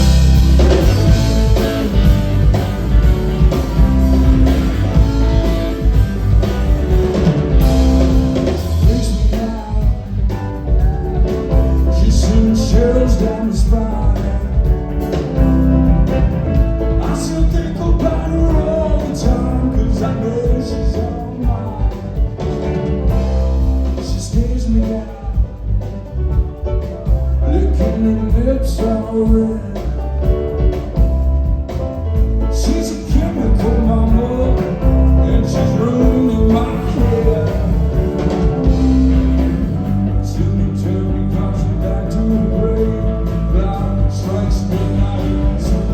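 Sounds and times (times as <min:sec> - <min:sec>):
drums: 0:00.0 - 0:45.9
guitar: 0:00.0 - 0:45.9
person singing: 0:08.2 - 0:15.4, 0:16.9 - 0:22.3, 0:32.5 - 0:45.9.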